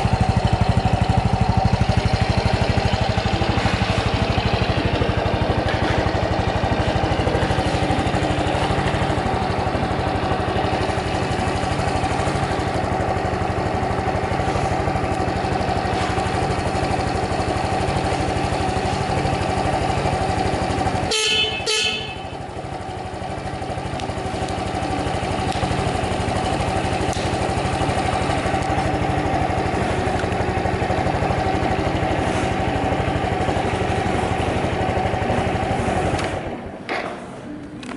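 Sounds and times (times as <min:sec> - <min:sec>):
scooter engine idling: 0:00.0 - 0:37.9
scooter horn beeps: 0:20.7 - 0:22.7.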